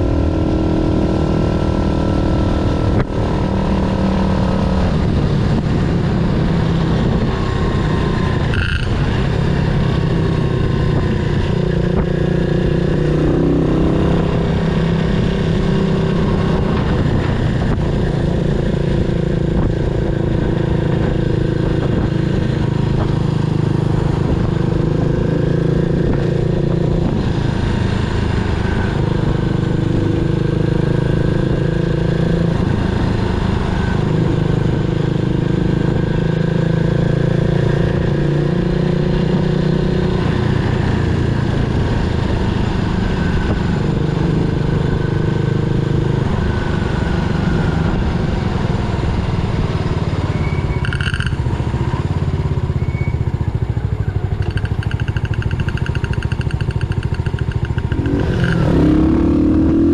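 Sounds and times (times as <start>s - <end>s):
single-cylinder motorcycle engine running: 39.2s - 59.9s.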